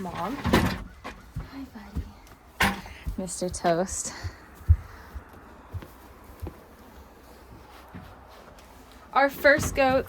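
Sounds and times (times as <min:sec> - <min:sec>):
dull low thumps: 0:00.0 - 0:06.6.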